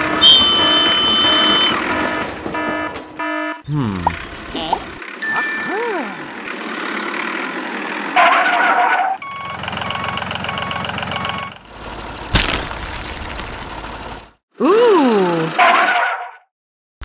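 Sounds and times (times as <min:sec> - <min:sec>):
small engine running: 0:00.0 - 0:02.4, 0:03.8 - 0:08.2, 0:09.5 - 0:14.4
regular beeping: 0:00.0 - 0:04.2, 0:09.2 - 0:14.3.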